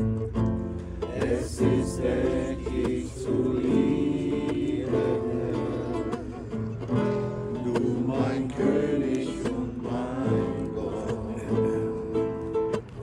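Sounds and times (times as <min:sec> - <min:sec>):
strummed acoustic guitar: 0:00.0 - 0:13.0
voices singing worship song: 0:01.0 - 0:13.0.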